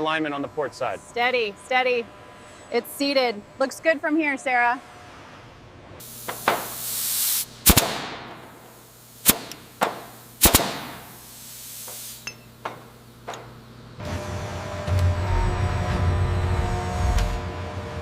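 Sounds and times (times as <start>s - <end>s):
compressed air bursts hissing: 6.0s - 12.3s.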